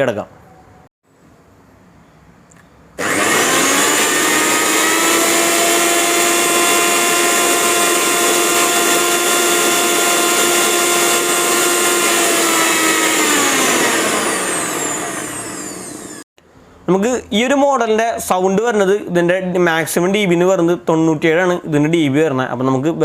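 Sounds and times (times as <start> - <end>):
mixer grinder motor whine: 3.0 - 16.3.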